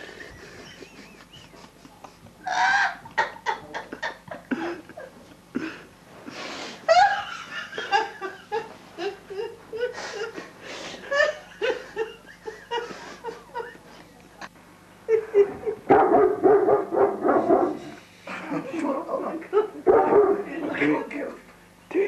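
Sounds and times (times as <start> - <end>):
people laughing hard: 0.0 - 5.8, 6.8 - 14.0, 15.1 - 15.9.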